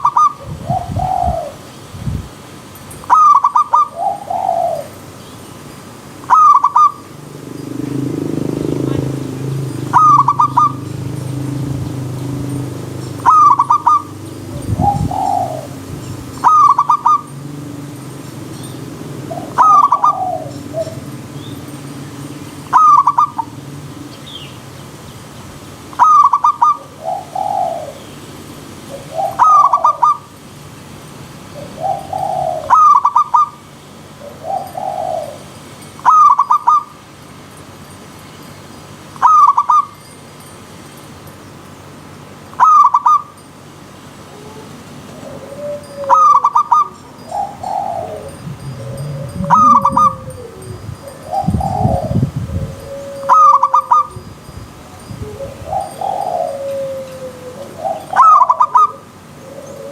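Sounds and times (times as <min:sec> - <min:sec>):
dove cooing: 0:00.0 - 0:01.7, 0:03.0 - 0:05.1, 0:06.2 - 0:21.8, 0:22.7 - 0:24.1, 0:25.9 - 0:28.0, 0:28.9 - 0:30.2, 0:31.5 - 0:33.6, 0:34.2 - 0:36.9, 0:44.3 - 0:54.2, 0:55.2 - 0:59.9.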